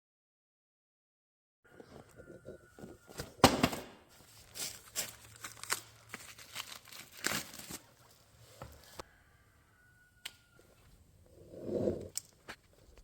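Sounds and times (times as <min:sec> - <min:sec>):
packaging crinkling and rustling: 0:04.1 - 0:08.2.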